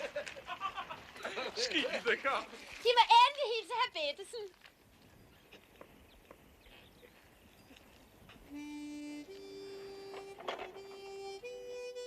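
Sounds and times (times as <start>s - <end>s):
slow tune on reed instrument: 8.5s - 12.0s.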